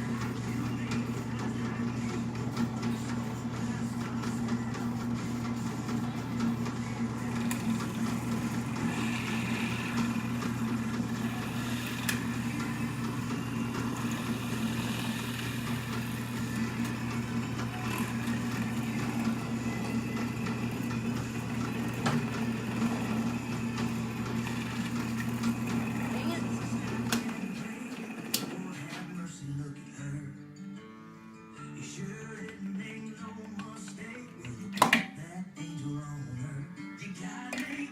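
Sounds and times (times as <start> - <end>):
electric motor humming: 0.0 - 28.7.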